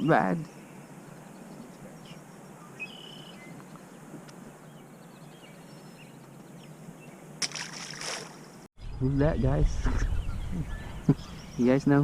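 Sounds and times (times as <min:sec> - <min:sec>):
faint bird chirps: 0:00.0 - 0:04.0.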